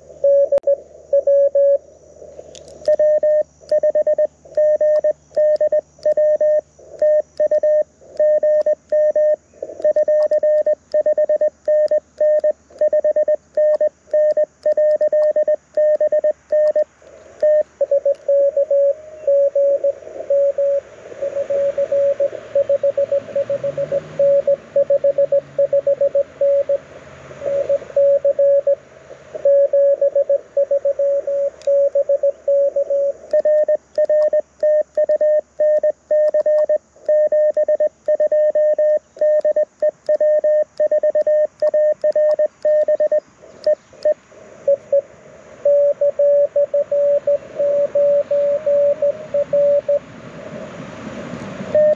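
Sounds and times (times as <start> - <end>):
morse code tones: 0.0 - 1.8, 2.8 - 26.8, 27.4 - 50.0
faint receiver hiss: 0.0 - 23.6, 27.4 - 50.0.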